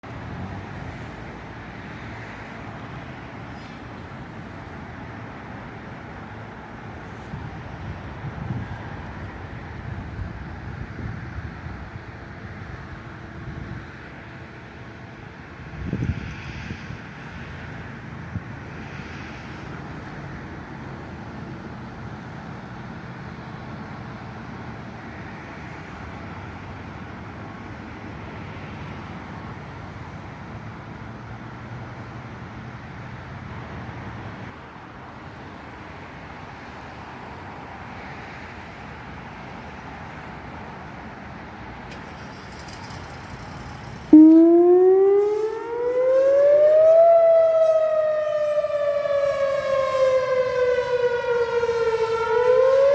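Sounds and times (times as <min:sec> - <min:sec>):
tornado warning siren: 0:43.6 - 0:52.9.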